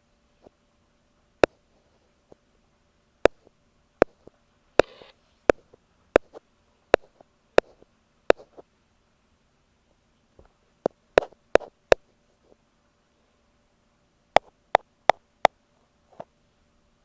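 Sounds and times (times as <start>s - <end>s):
ear pick tapping on microphone: 3.2s - 8.6s, 10.8s - 12.0s.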